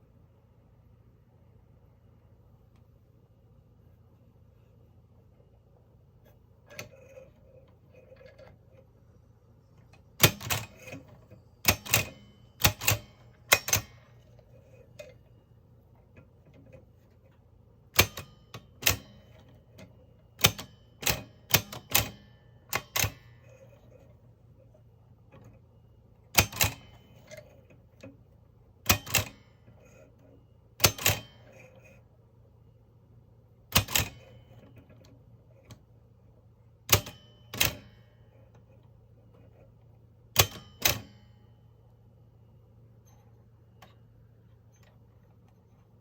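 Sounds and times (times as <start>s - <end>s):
typewriter metallic clacks: 10.2s - 14.2s, 18.0s - 19.5s, 20.4s - 23.5s, 26.4s - 27.4s, 28.9s - 30.0s, 30.8s - 31.6s, 33.7s - 34.6s, 36.9s - 38.0s, 40.4s - 41.2s.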